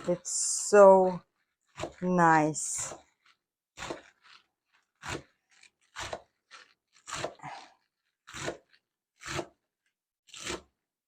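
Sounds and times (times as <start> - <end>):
knife chopping greens on cutting board: 1.7 - 2.0, 2.8 - 4.4, 5.0 - 7.7, 8.3 - 9.5, 10.3 - 10.6.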